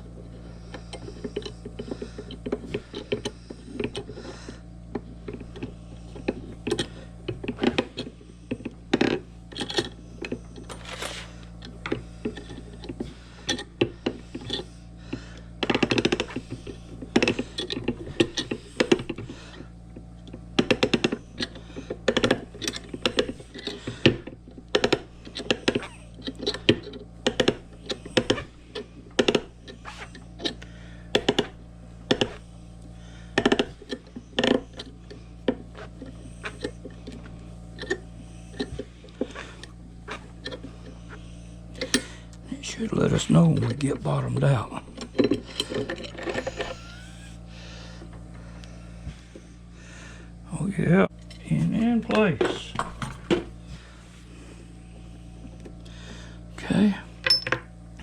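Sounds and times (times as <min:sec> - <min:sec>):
steady low hum: 0:00.0 - 0:58.0
metal parts and tools clicking: 0:57.2 - 0:57.6.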